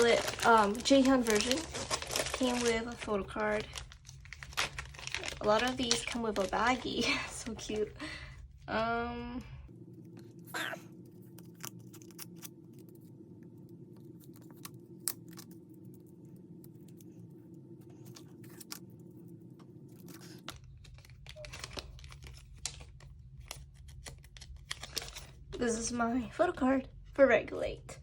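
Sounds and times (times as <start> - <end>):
plastic packaging crinkling: 0.0 - 8.4, 11.1 - 13.1, 18.0 - 25.8
steady low hum: 0.0 - 28.0.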